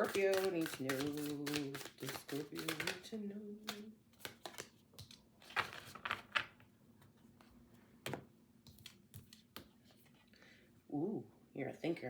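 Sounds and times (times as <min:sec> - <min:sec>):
cards shuffling: 0:00.0 - 0:06.6.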